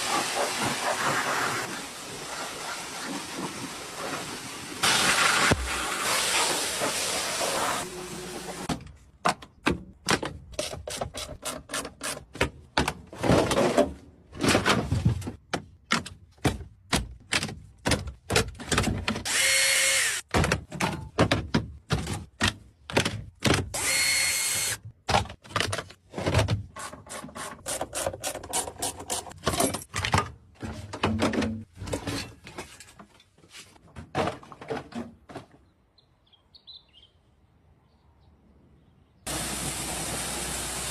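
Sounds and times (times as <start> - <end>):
power tool whirring and knocking: 19.2 - 20.3, 23.7 - 24.8.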